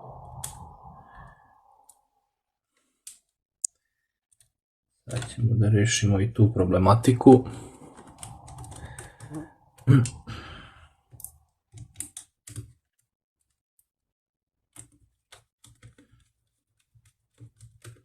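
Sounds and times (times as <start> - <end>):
laptop parts clicking: 11.2 - 12.8, 14.7 - 18.0.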